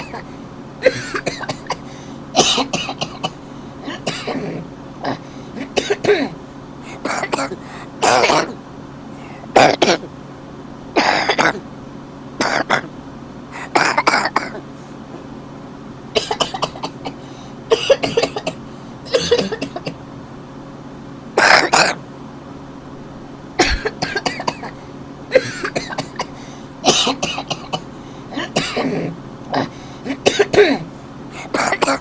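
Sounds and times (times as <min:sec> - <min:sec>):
man coughing: 0:00.0 - 0:08.6, 0:09.5 - 0:10.1, 0:11.0 - 0:11.6, 0:12.4 - 0:12.9, 0:13.6 - 0:14.6, 0:16.2 - 0:20.0, 0:21.4 - 0:22.0, 0:23.6 - 0:32.0
steady low hum: 0:00.0 - 0:32.0.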